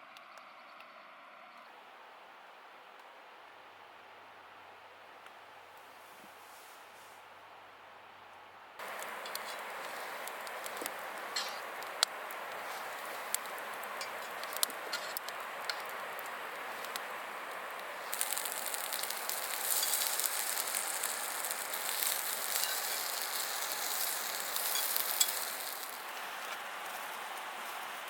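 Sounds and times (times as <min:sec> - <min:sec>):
food sizzling in a pan: 0:08.8 - 0:28.0.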